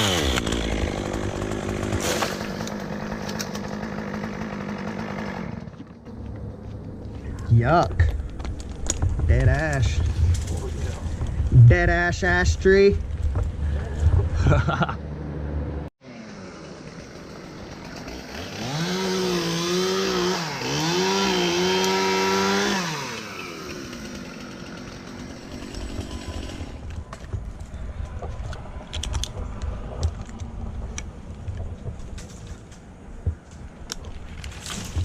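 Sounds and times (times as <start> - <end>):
chainsaw revving: 0.0 - 6.1, 16.0 - 27.0
sharp cracks and knocks: 1.8 - 3.9, 8.0 - 11.5, 26.8 - 35.0.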